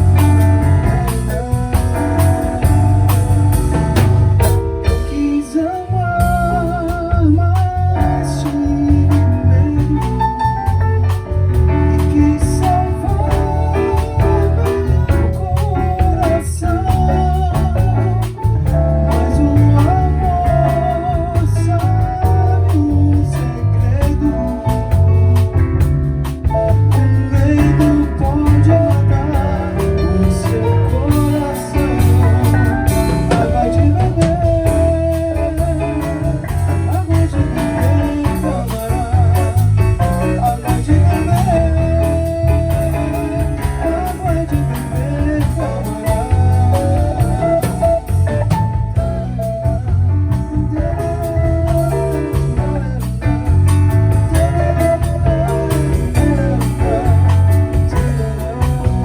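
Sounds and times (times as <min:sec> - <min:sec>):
person singing: 0:00.0 - 0:25.5, 0:26.4 - 0:59.0
drum kit: 0:00.0 - 0:59.0
electric bass: 0:00.0 - 0:59.0
guitar: 0:00.0 - 0:59.0
piano: 0:00.0 - 0:59.0.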